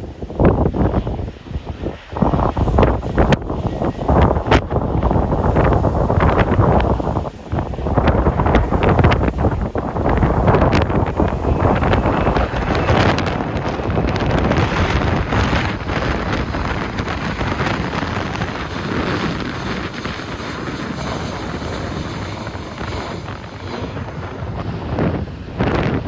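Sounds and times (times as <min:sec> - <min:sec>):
jet engines running: 0:00.0 - 0:26.0
wind buffeting microphone: 0:00.0 - 0:26.0
faint high whine: 0:02.0 - 0:16.3.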